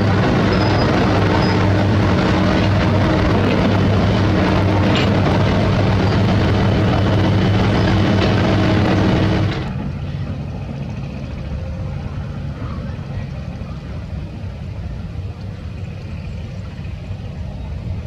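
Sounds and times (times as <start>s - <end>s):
machine working sound: 0.0s - 11.7s
diesel engine running at low revs: 0.0s - 18.0s.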